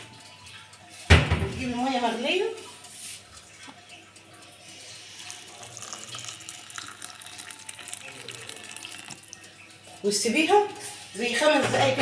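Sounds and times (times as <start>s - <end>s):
water pouring into glass: 4.8s - 9.6s.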